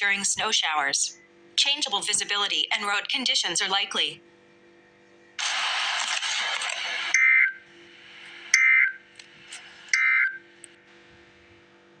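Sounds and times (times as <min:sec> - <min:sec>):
warbling data tone bursts: 0:07.0 - 0:07.7, 0:08.4 - 0:10.4.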